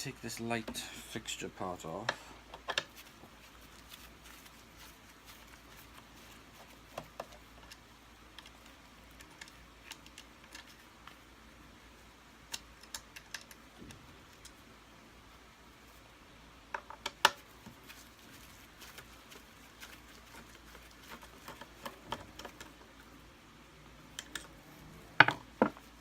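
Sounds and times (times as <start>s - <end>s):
plastic parts clicking and tapping: 2.0s - 4.0s, 4.8s - 11.2s, 12.5s - 14.6s, 16.7s - 23.0s, 24.1s - 24.6s.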